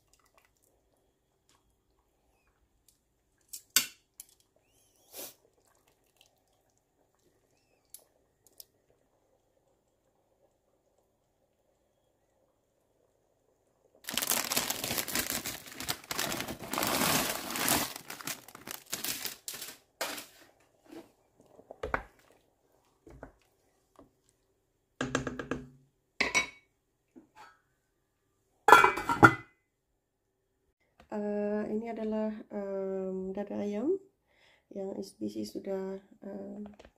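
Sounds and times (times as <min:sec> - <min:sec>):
packaging crinkling: 0:14.0 - 0:20.4
kitchenware knocks and clinks: 0:25.0 - 0:26.7, 0:28.7 - 0:29.5.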